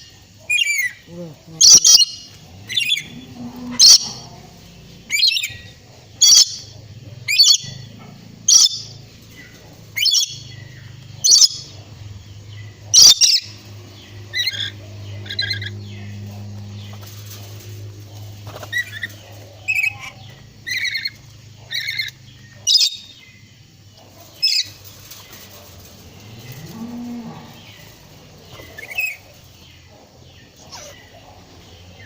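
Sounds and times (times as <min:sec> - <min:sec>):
parrot squawking: 0:00.5 - 0:03.1, 0:03.7 - 0:04.0, 0:05.1 - 0:06.7, 0:07.3 - 0:07.8, 0:08.4 - 0:08.9, 0:12.9 - 0:13.5, 0:30.6 - 0:31.1.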